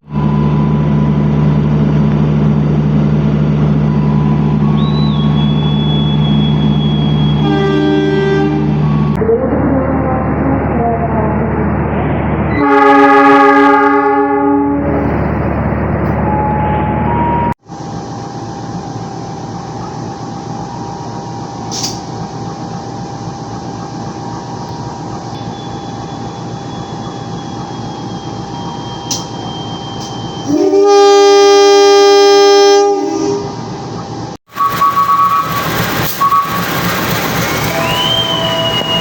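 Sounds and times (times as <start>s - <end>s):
locomotive engine rumble: 0.0s - 39.0s
locomotive horn blast: 4.7s - 9.2s, 12.5s - 15.1s, 30.4s - 33.6s.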